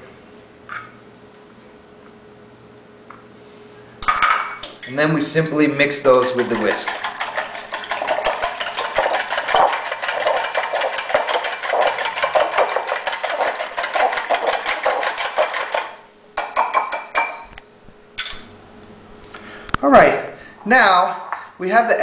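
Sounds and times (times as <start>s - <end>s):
whisk beating batter in bowl: 4.8s - 17.0s.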